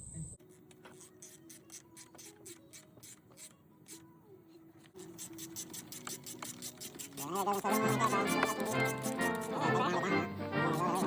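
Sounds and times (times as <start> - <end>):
faint steady hum: 0.0 - 0.4
socket ratchet clicking: 5.0 - 9.6.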